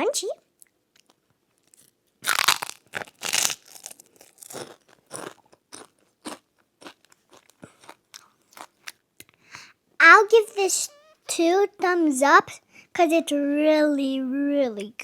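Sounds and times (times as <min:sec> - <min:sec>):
chewing with soft crunches: 0:00.6 - 0:09.4
loud crunching bites: 0:01.7 - 0:09.0.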